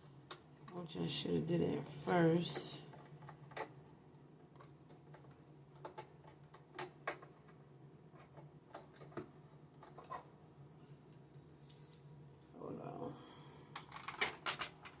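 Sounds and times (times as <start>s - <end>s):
low steady hum: 0.0s - 15.0s
small parts clicking and tapping: 2.5s - 10.2s, 13.7s - 15.0s.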